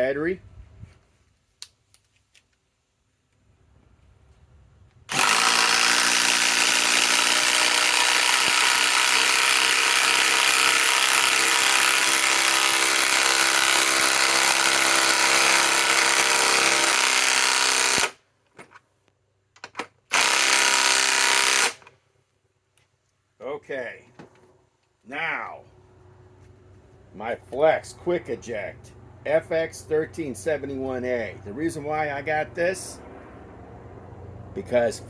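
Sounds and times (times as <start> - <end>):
cordless impact wrench hammering: 5.1 - 18.2, 19.7 - 21.9.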